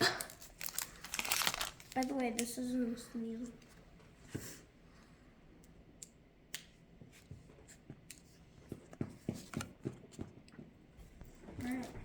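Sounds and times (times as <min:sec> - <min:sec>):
trading cards being handled: 0:00.4 - 0:02.5.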